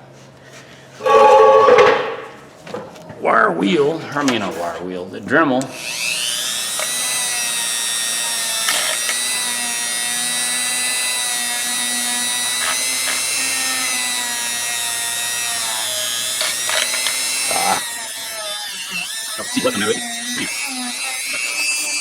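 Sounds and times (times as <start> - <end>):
bit scratching metal: 1.0 - 2.2, 15.6 - 22.0
rotary tool whining: 5.7 - 22.0.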